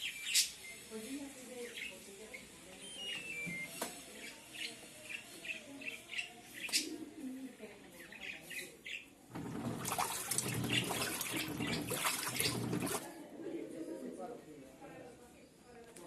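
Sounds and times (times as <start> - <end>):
birds chirping: 0.0 - 13.1
washing machine water churning: 9.3 - 13.2.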